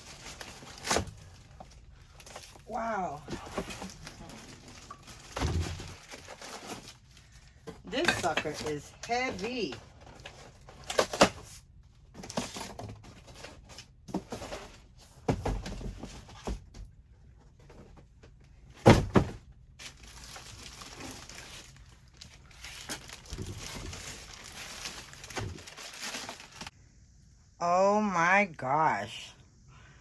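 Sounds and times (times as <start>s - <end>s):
packaging rustling and crinkling: 0.0s - 16.6s, 18.8s - 26.8s
cardboard box knocks and thumps: 14.1s - 16.9s, 18.8s - 19.4s.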